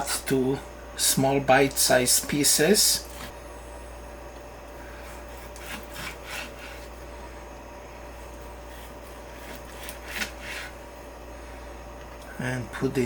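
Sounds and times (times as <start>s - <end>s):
faint steady hum: 0.0s - 13.0s
knife slicing on cutting board: 5.1s - 6.9s, 8.7s - 10.8s.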